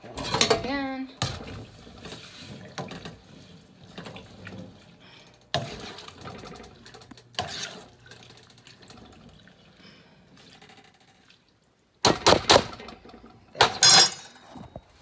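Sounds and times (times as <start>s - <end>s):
liquid sloshing in a pot: 0.0s - 11.9s.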